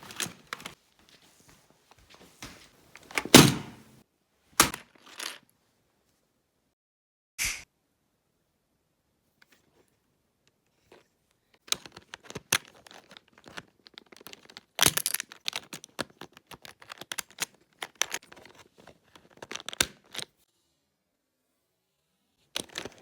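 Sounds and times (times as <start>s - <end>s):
plastic keycaps clicking and scraping: 11.6s - 20.3s, 22.6s - 23.0s.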